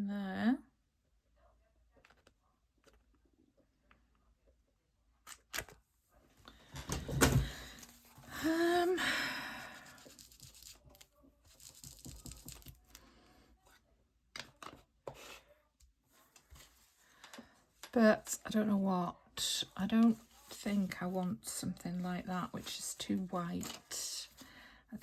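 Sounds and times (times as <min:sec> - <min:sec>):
paper rustling: 0:09.7 - 0:13.0, 0:20.0 - 0:24.5.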